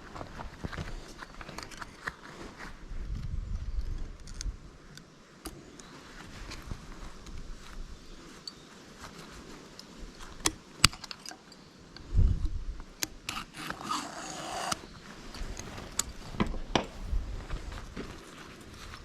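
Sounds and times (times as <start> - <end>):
dull thump: 15.0 - 18.2.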